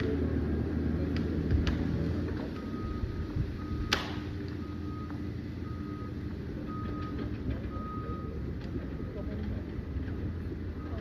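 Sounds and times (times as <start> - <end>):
diesel engine low rumble: 0.0 - 11.0
reversing alarm beeping: 2.5 - 8.6, 10.7 - 11.0.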